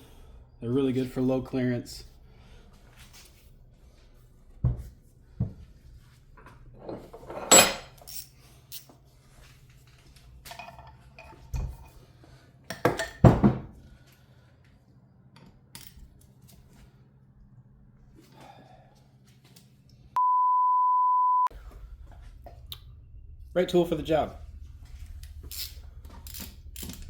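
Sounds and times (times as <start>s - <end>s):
faint low hum: 20.2s - 27.0s
metal tools clinking: 25.4s - 27.0s.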